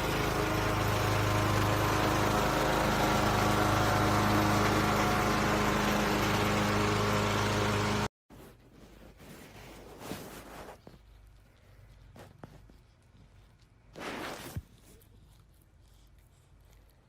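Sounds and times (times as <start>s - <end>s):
motor humming: 0.0s - 8.1s.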